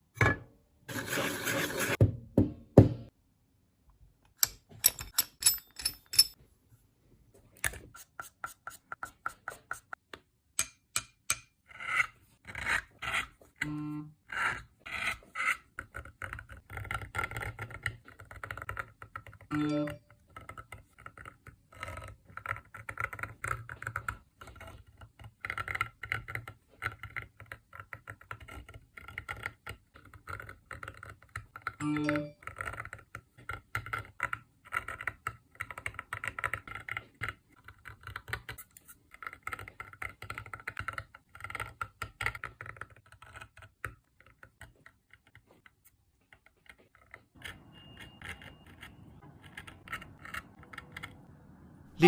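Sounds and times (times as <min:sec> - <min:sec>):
knife scraping on stone: 0:00.9 - 0:02.0, 0:11.7 - 0:13.4.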